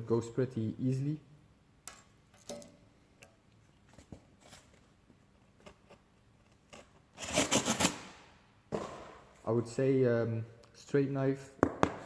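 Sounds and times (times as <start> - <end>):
serrated blade sawing cardboard: 7.2 - 8.1.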